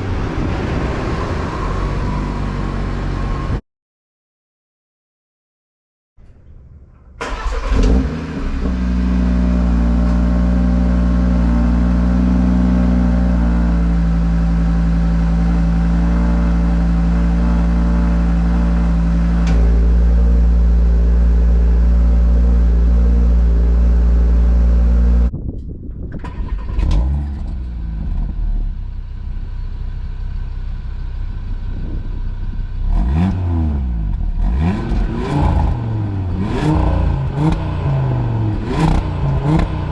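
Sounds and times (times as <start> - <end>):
car engine starting and idling: 6.4 - 25.3, 25.9 - 39.9
engine revving: 7.2 - 25.3, 26.2 - 28.6, 32.8 - 39.9.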